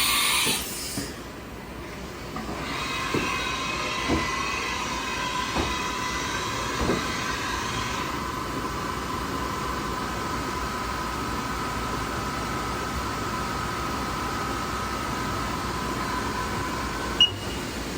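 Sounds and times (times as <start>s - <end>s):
hiss: 0.0s - 1.2s.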